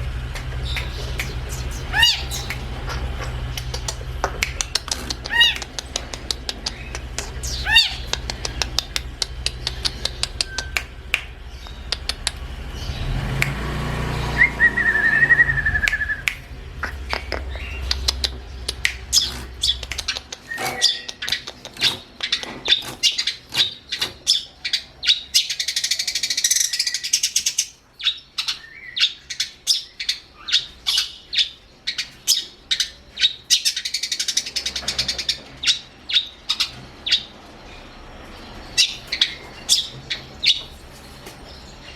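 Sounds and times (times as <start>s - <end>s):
harsh rasping bird chatter: 0.0s - 14.5s, 15.2s - 41.9s
low rumble: 0.0s - 20.1s
bird calling sharp notes: 0.0s - 24.6s.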